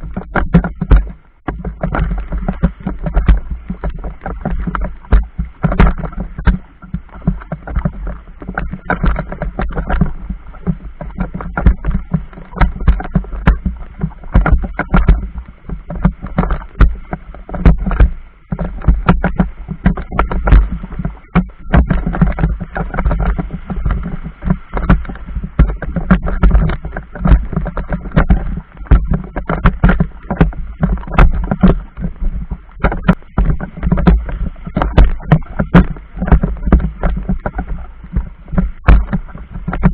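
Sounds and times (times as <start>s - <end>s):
river water slapping and splashing: 0.0s - 39.9s.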